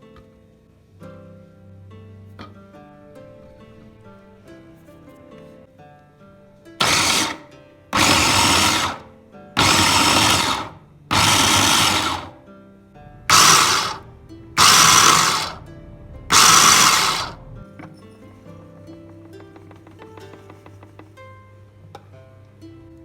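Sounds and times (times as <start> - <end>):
soft background music: 0.0 - 6.8, 7.5 - 7.9, 17.4 - 23.0
blender pulsing: 6.8 - 12.4, 13.3 - 15.6, 16.3 - 17.5.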